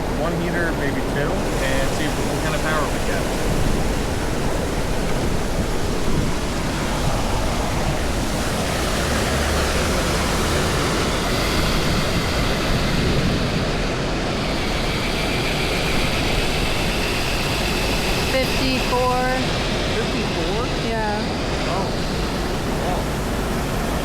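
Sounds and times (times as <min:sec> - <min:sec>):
faint high whine: 0:00.0 - 0:08.3, 0:09.3 - 0:24.0
waterfall rushing: 0:00.0 - 0:13.0.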